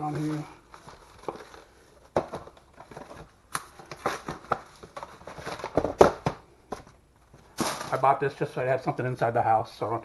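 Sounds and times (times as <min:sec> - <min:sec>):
cardboard and plastic rustling: 0:00.0 - 0:08.2.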